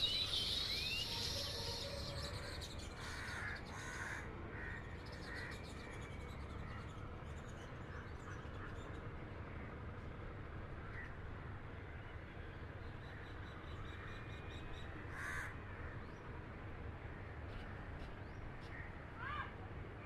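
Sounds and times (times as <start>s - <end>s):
birds calling: 0.0s - 5.5s.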